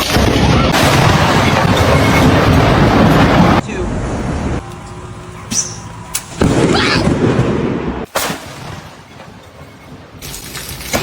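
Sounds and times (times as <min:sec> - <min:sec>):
thunder boom: 0:00.0 - 0:04.6, 0:06.3 - 0:09.0
low noisy rumble: 0:00.2 - 0:10.4.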